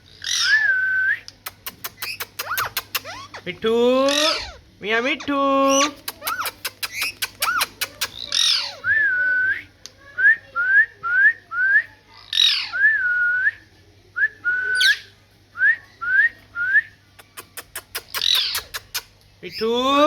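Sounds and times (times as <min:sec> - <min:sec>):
parrot clicks: 0:01.4 - 0:03.2, 0:05.9 - 0:08.2
parrot squawking: 0:01.5 - 0:08.8, 0:17.2 - 0:19.7
parrot whistling: 0:01.6 - 0:03.4.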